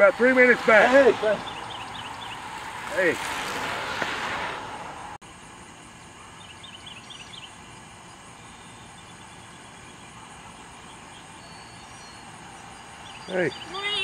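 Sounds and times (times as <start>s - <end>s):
bicycle road and wind noise: 0.0s - 5.2s.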